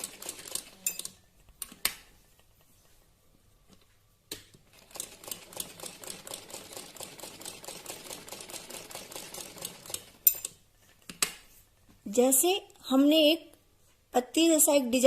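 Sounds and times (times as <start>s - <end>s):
sewing machine stitching: 4.7s - 10.2s.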